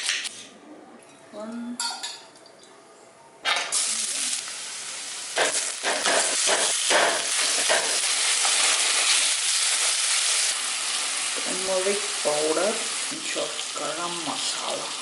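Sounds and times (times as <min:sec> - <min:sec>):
food sizzling in hot oil: 0:03.7 - 0:15.0.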